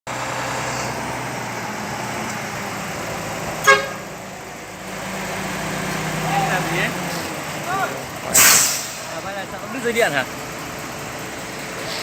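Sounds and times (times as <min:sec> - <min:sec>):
diesel truck engine running: 0:00.1 - 0:12.0
short sharp horn beep: 0:03.6 - 0:04.0.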